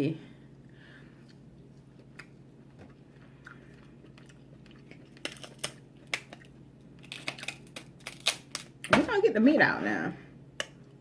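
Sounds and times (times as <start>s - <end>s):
crab shell cracking: 4.7s - 8.8s.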